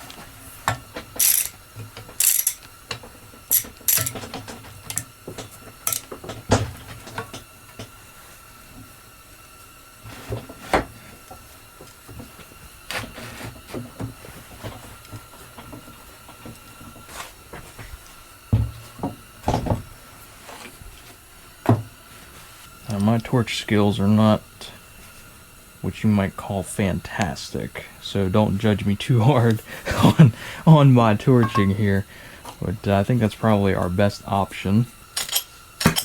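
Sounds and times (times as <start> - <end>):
tools and metal clanking: 1.2 - 2.7, 3.5 - 5.0, 5.9 - 6.2, 31.4 - 31.8, 35.2 - 36.0
faint high hum: 22.8 - 35.0.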